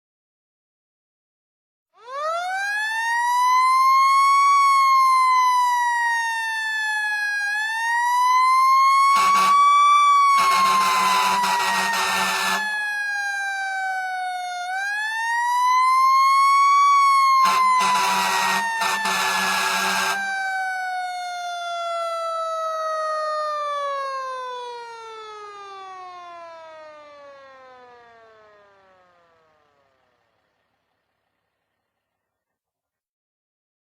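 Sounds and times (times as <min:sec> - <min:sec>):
fire truck siren wailing: 0:02.0 - 0:30.8
horn blasts: 0:09.1 - 0:12.9, 0:17.4 - 0:20.3.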